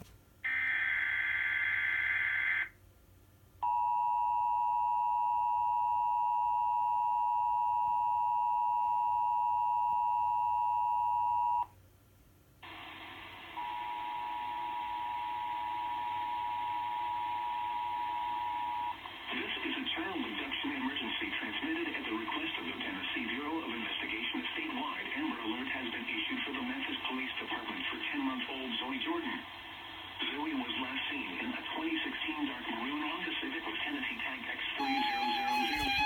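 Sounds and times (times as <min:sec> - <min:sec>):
two-tone attention signal: 0:34.8 - 0:36.0.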